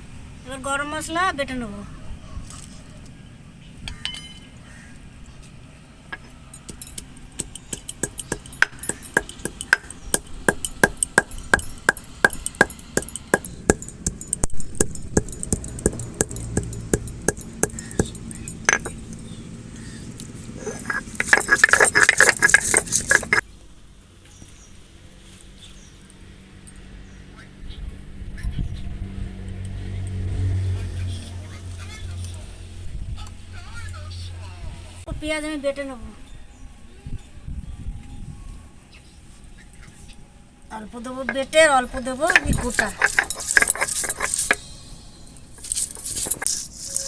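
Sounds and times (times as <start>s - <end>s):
rough stone grinding: 6.6s - 19.3s, 20.1s - 23.4s, 41.3s - 44.7s, 45.6s - 47.0s
stone-on-stone knocks: 6.7s - 19.2s, 20.6s - 23.4s.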